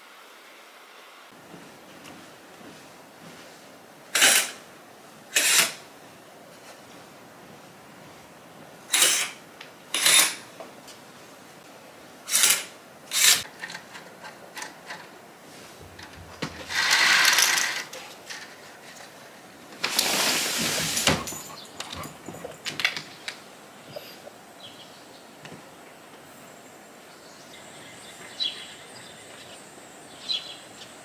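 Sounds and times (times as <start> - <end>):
rubbing or scraping noises: 12.3 - 23.2
sharp knocks or rattles: 15.8 - 17.9.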